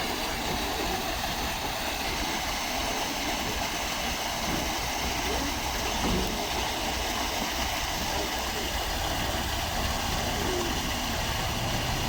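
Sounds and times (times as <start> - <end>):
steady rushing noise: 8.4 - 12.0.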